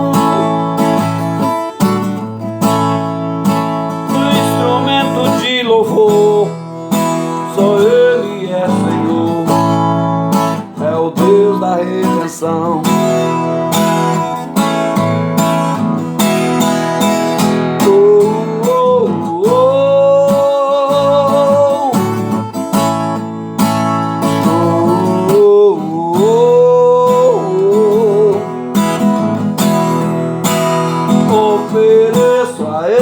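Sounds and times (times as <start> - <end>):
strummed acoustic guitar: 0.0 - 33.0.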